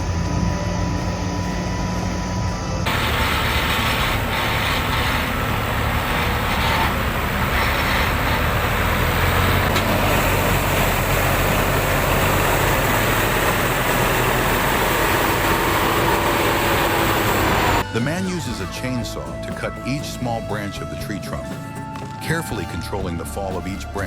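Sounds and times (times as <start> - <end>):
engine running under load: 0.0 - 19.1.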